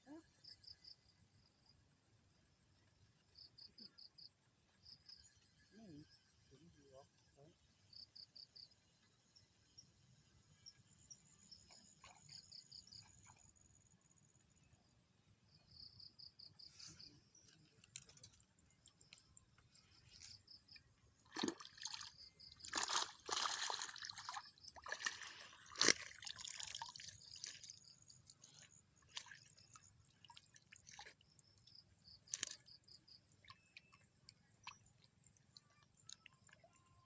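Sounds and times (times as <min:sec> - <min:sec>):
water splashing and sloshing: 0:21.2 - 0:36.6.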